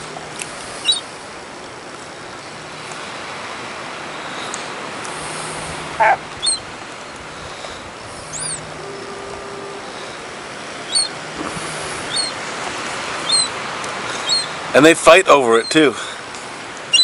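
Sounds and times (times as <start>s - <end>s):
background traffic or surf noise: 0.0s - 17.0s
high bird chirps: 0.8s - 1.0s, 6.0s - 6.7s, 8.2s - 9.1s, 10.8s - 11.2s, 12.0s - 12.4s, 13.2s - 13.5s, 14.2s - 14.5s.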